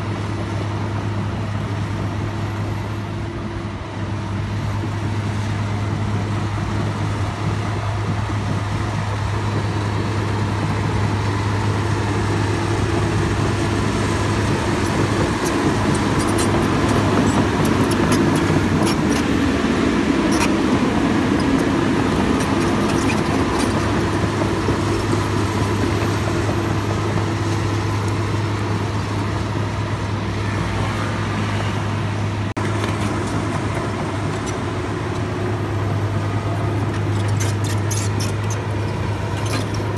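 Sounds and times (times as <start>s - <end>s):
excavator diesel engine droning: 0.0s - 39.9s.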